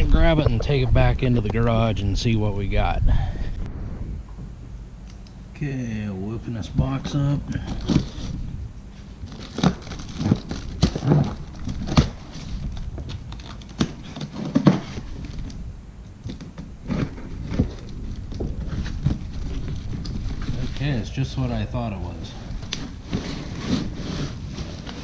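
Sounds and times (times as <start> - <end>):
cardboard and tape tearing: 9.2 - 15.5, 16.3 - 21.0, 22.6 - 25.0.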